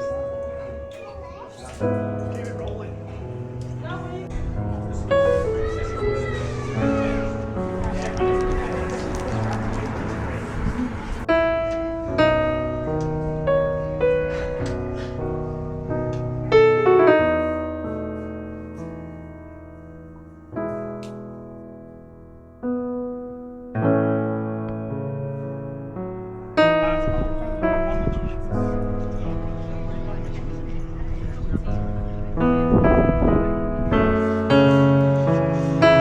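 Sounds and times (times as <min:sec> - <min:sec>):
piano chords ringing: 0:00.0 - 0:36.0.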